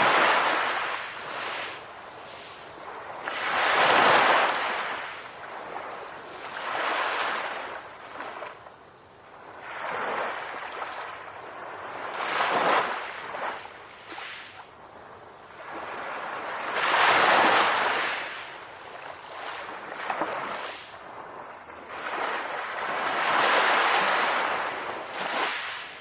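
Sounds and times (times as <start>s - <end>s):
ocean waves breaking on shore: 0.0s - 26.0s.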